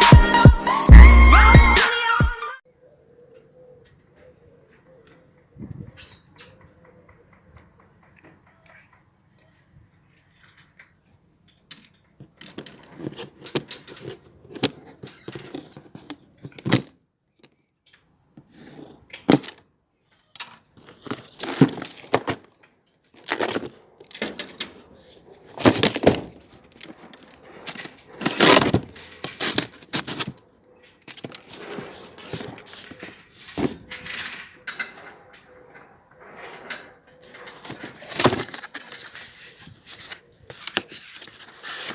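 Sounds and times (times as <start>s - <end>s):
packaging rustling and crinkling: 23.2s - 34.4s, 37.2s - 41.9s.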